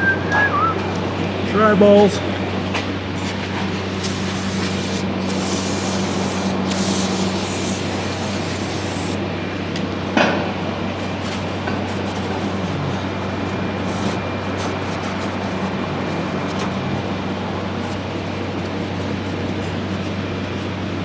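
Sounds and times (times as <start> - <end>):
spraying hiss: 3.7 - 9.2.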